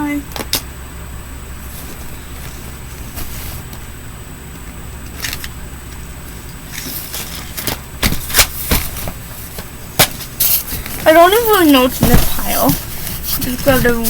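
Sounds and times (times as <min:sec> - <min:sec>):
steady low hum: 0:00.0 - 0:14.0
plastic toys clattering: 0:10.0 - 0:14.0.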